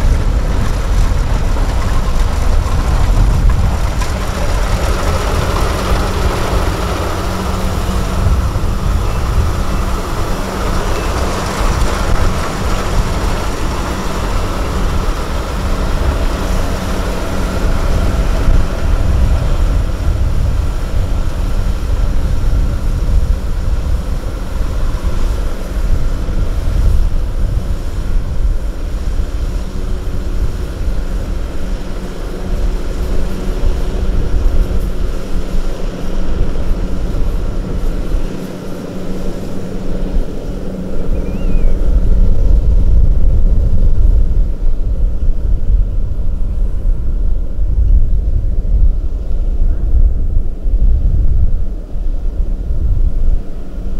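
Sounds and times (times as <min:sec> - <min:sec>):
diesel engine running under load: 0:00.0 - 0:53.9.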